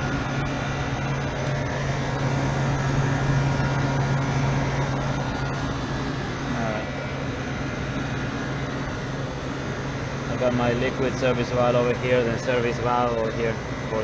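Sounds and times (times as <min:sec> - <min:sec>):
compressor humming: 0:00.0 - 0:14.0
condenser fans rushing: 0:00.0 - 0:14.0.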